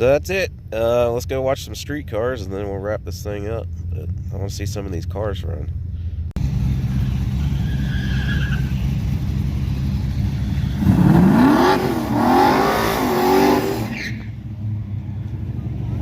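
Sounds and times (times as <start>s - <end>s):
low engine rumble: 0.0s - 16.0s
car engine revving: 6.4s - 16.0s.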